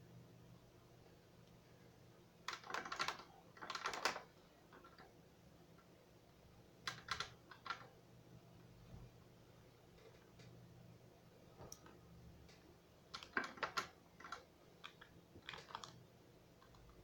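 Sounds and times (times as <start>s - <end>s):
faint low hum: 0.0s - 17.0s
keyboard keys clicking: 2.5s - 5.0s, 6.9s - 7.9s, 13.1s - 16.0s.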